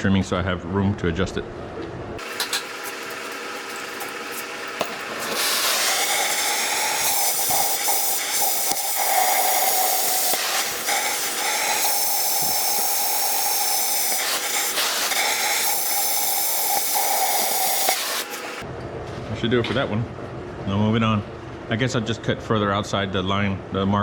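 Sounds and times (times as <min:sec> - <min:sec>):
cutting torch hissing: 0:02.2 - 0:18.7.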